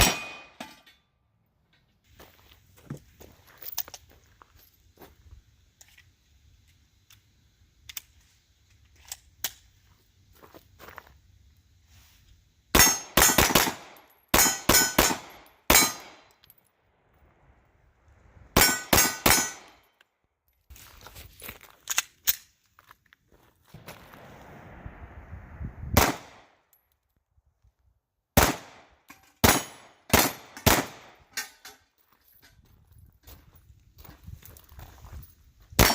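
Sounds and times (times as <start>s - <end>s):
pistol shots: 0.0s - 0.6s, 12.8s - 16.3s, 18.6s - 19.8s, 26.0s - 26.5s, 28.4s - 31.2s.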